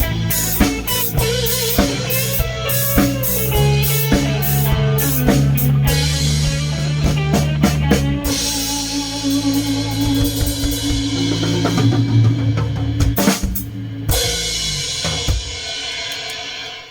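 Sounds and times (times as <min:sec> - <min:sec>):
rock band playing: 0:00.0 - 0:16.9
cymbal crashes: 0:09.7 - 0:16.9.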